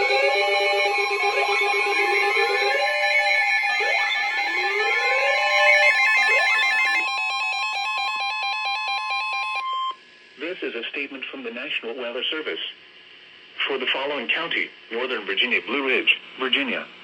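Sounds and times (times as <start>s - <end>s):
electronic rising sweeps: 0.0s - 7.9s
rapid electronic pulsing: 0.0s - 8.2s
steady alert tone: 0.0s - 9.0s.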